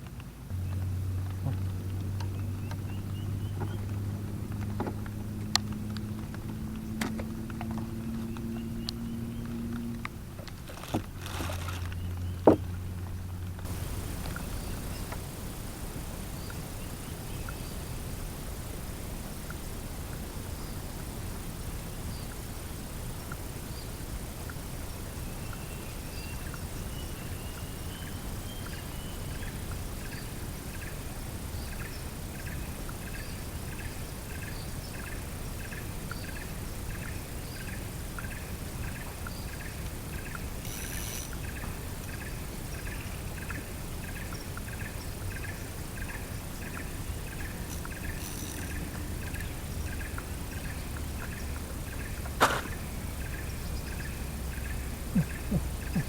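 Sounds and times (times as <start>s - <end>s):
constant high whine: 0.0s - 56.0s
low rumble and hiss: 0.0s - 56.0s
chirping animal call: 52.0s - 56.0s
brief hissing burst: 52.4s - 52.8s.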